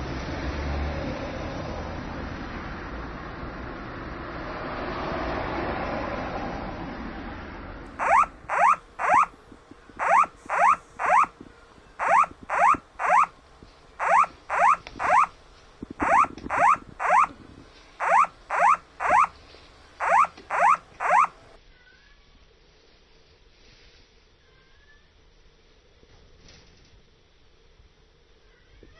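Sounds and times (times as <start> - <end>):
quick rising alert tones: 8.0 - 9.3, 10.0 - 11.3, 12.0 - 13.3, 14.0 - 15.3, 16.0 - 17.3, 18.0 - 19.4, 20.0 - 21.4.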